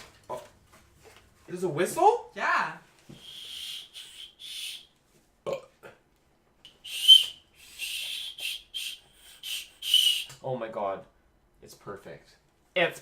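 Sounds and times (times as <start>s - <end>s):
whistle short high toots: 3.2s - 4.9s, 6.7s - 10.4s.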